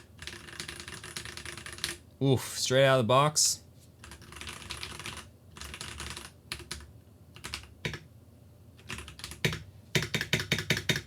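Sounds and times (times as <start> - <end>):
mechanical keyboard typing: 0.0 - 2.0, 4.0 - 8.0, 8.8 - 11.0.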